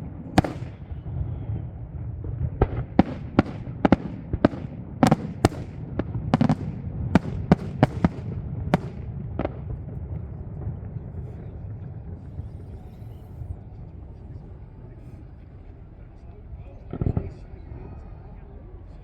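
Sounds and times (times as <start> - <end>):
fireworks bangs: 0.0 - 17.8
low rumble: 0.0 - 19.0.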